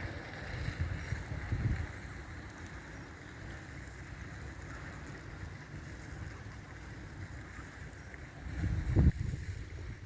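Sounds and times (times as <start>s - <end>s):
wind buffeting microphone: 0.0s - 2.5s, 8.4s - 10.0s.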